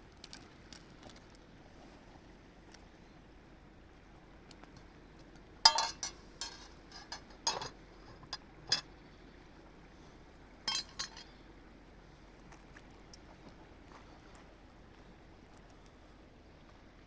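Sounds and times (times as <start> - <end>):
hard objects clinking and clattering: 5.7 - 8.9, 10.7 - 11.3.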